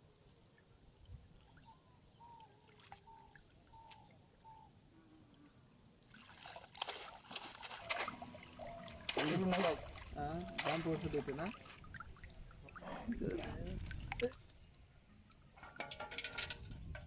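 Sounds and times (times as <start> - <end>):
water trickling and splashing: 0.0 - 17.0.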